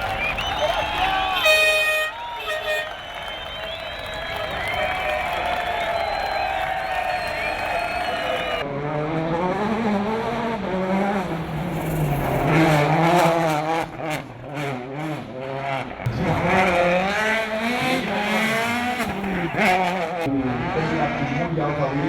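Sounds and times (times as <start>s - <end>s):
rally car engine revving: 8.1s - 22.0s.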